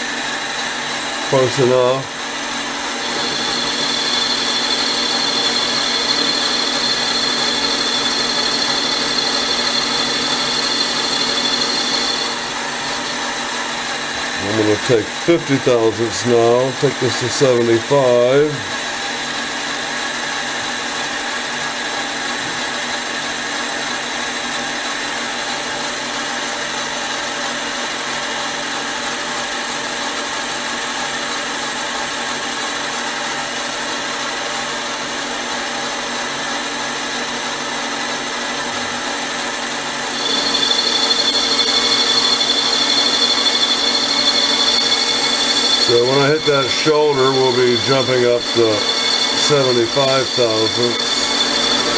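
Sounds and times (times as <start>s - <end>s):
lathe motor whine: 0.0s - 25.9s, 31.7s - 51.9s
sharp high-pitched whine: 1.3s - 18.7s, 40.0s - 51.9s.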